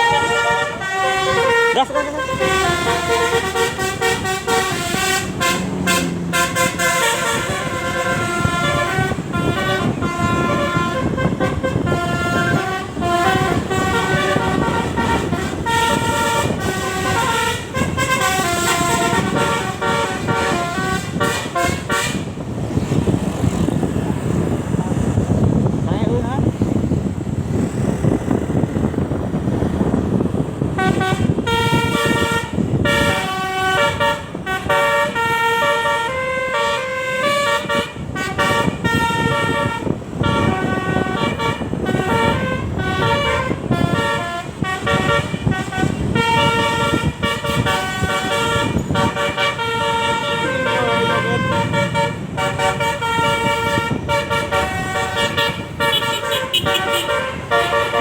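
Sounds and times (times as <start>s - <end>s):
multi-tone bus air horns: 0.0s - 25.8s, 28.5s - 58.0s.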